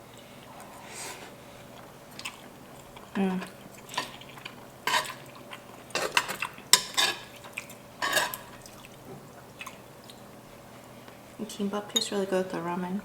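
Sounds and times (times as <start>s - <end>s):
utensils clinking against a bowl: 3.2s - 8.8s.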